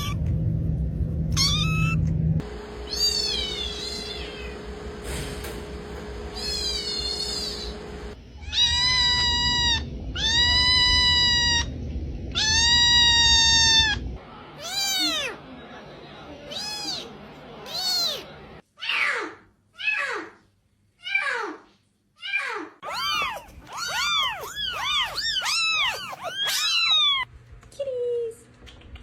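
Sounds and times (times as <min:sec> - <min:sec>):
cat meowing: 0:01.4 - 0:02.1, 0:02.9 - 0:04.5, 0:06.4 - 0:07.7, 0:08.4 - 0:11.7, 0:12.3 - 0:14.0, 0:14.6 - 0:15.4, 0:16.5 - 0:19.1, 0:22.2 - 0:27.3.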